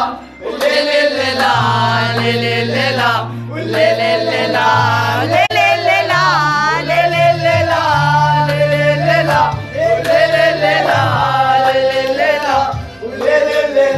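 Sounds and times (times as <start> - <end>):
bass line: 0.9 - 13.9.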